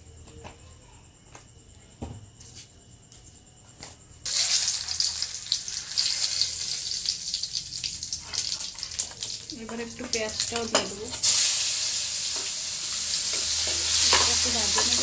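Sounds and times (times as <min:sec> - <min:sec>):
hot oil sizzling in a pan: 0:04.3 - 0:15.0.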